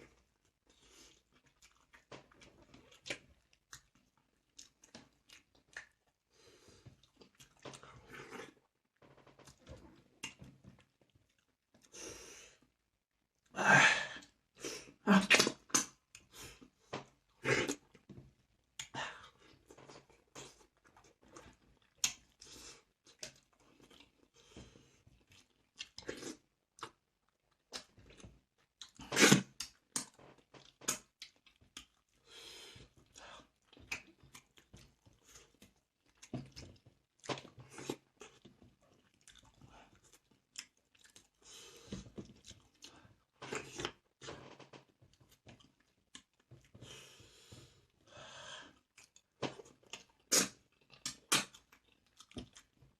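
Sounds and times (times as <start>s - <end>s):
food crunching and chewing: 0.0s - 12.0s, 15.3s - 47.8s, 48.6s - 52.9s.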